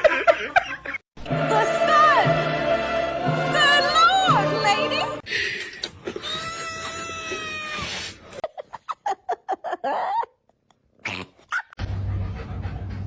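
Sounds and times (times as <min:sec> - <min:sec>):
cat yowling and meowing: 0:06.2 - 0:08.0.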